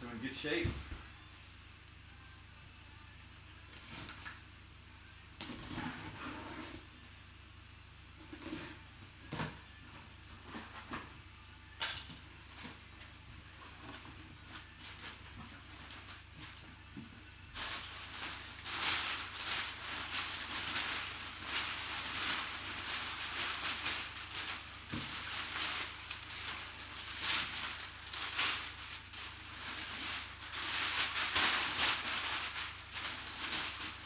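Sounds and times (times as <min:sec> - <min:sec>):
cardboard packaging rustling and scraping: 0:05.4 - 0:07.0, 0:08.2 - 0:11.3, 0:12.2 - 0:34.0.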